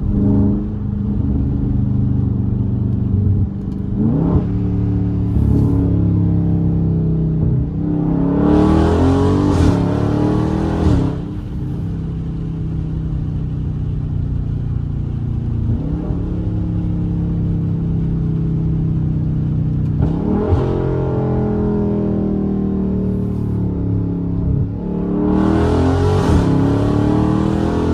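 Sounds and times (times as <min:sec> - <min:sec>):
car engine accelerating hard: 0:00.0 - 0:12.9, 0:19.9 - 0:27.9.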